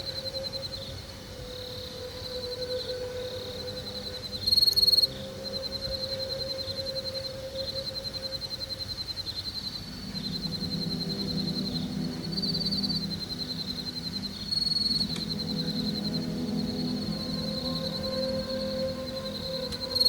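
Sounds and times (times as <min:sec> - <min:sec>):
insects chirping trill: 0:00.0 - 0:20.0
low drone: 0:00.0 - 0:20.0.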